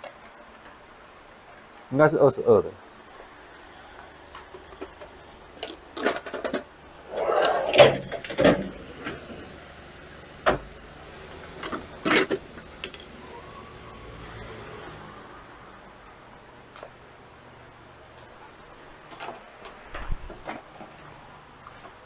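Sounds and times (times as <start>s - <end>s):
tools rattling: 5.6s - 8.7s, 11.6s - 13.1s
metal hand tools clanking: 11.6s - 13.0s.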